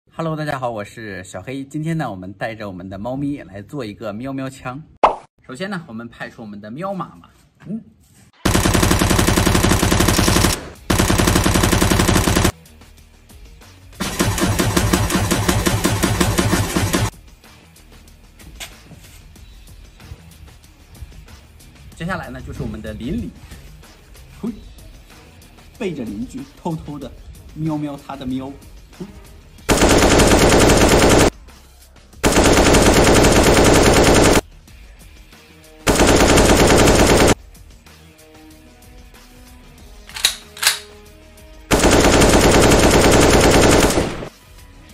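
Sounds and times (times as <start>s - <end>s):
machine-gun automatic fire: 8.5s - 12.6s, 14.0s - 17.1s, 29.7s - 31.3s, 32.2s - 34.4s, 35.9s - 37.4s, 41.7s - 44.3s.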